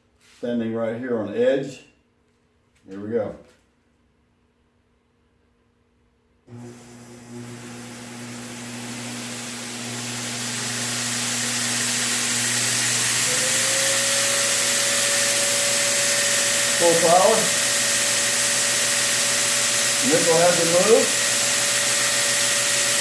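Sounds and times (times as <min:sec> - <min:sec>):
belt grinder running: 0:06.5 - 0:23.0.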